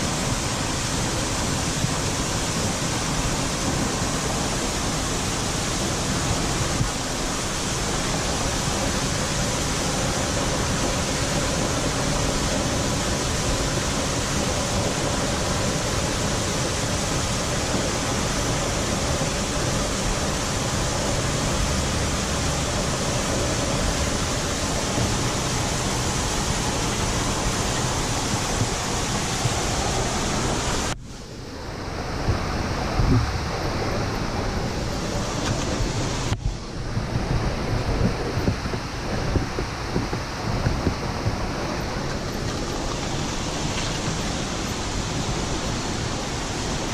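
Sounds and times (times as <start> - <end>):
waterfall rushing: 0.0 - 46.9.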